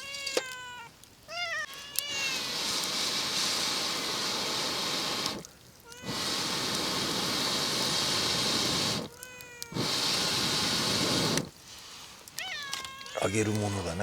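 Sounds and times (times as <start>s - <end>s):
cat meowing: 0.0s - 2.5s, 5.8s - 6.2s, 9.1s - 9.9s, 12.4s - 13.3s
campfire crackling: 0.0s - 14.0s.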